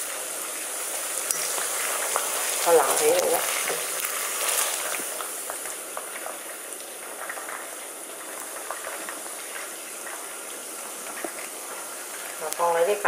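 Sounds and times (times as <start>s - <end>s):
hot oil sizzling: 0.0s - 13.0s.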